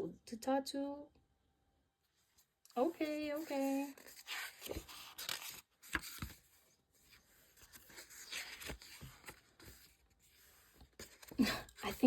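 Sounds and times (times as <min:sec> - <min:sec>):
paper pages rustling: 0:02.4 - 0:12.0.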